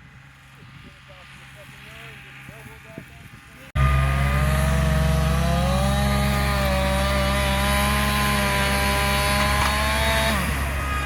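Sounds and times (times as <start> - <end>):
chainsaw cutting wood: 3.8 - 11.0.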